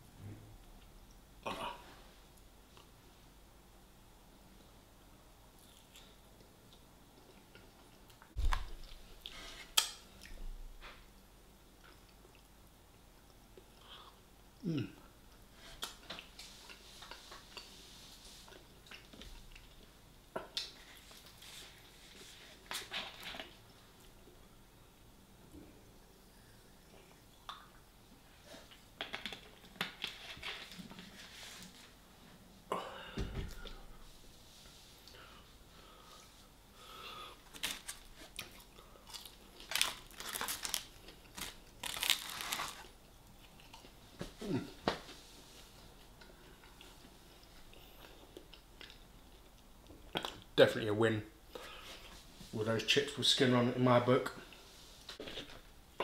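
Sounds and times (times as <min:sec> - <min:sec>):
person chewing with mouth clicks: 0:18.5 - 0:20.8.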